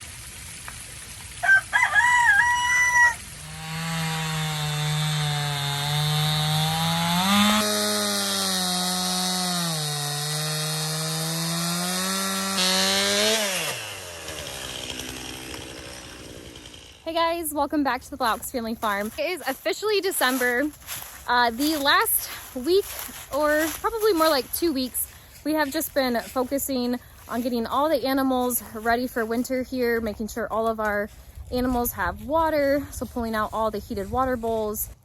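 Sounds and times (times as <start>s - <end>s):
rooster crowing: 1.4s - 3.3s.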